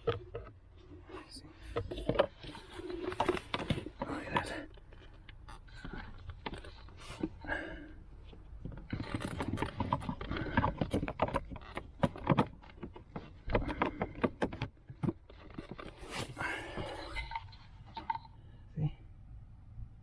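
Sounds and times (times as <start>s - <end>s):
clicks and knocks on plastic trim: 8.6s - 16.0s.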